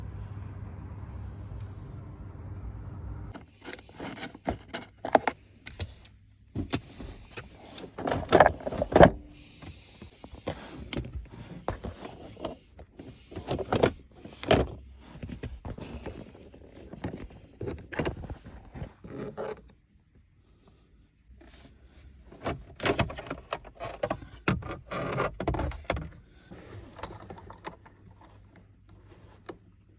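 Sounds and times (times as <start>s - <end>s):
low hum: 0.0s - 3.4s.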